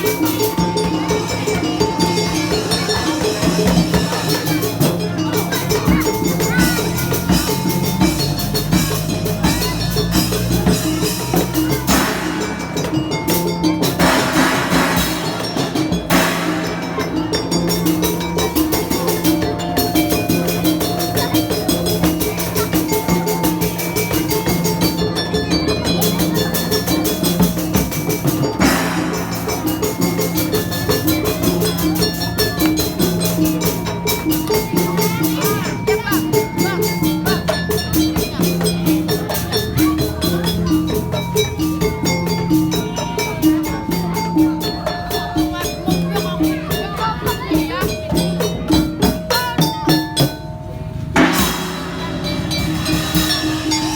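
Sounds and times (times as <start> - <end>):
rapid drum strokes: 0.0 - 53.9
street-music ensemble playing: 0.0 - 53.9.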